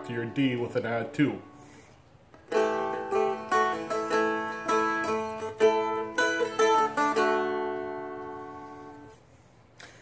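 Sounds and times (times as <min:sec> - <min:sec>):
dulcimer strummed slowly: 0:02.4 - 0:09.2.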